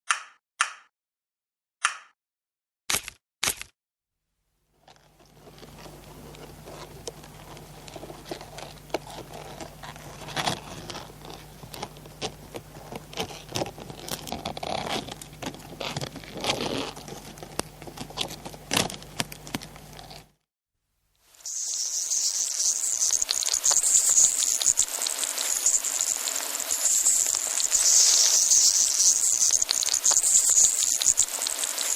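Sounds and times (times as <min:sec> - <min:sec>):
crab claw scraping and clicking: 0:04.9 - 0:20.3
steady low hum: 0:05.0 - 0:20.3.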